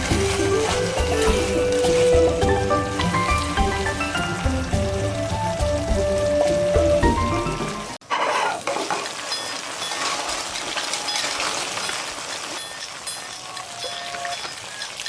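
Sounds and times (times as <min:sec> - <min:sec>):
music: 0:00.0 - 0:08.0
food sizzling in a pan: 0:00.0 - 0:15.0.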